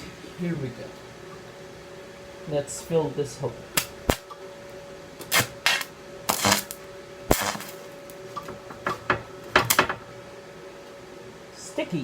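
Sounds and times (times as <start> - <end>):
faint hum: 0.0 - 12.0
welding arc crackling: 5.2 - 8.2.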